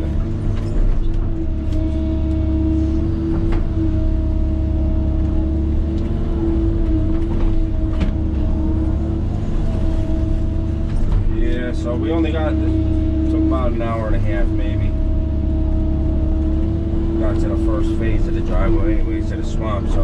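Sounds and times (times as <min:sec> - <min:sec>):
diesel engine running under load: 0:00.0 - 0:20.0.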